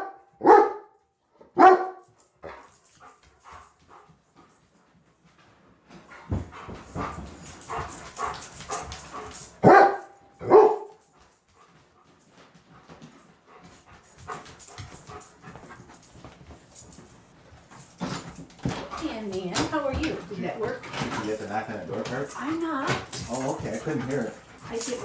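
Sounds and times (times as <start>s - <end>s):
dog barking: 0.0s - 1.0s, 1.6s - 2.1s, 9.6s - 11.1s.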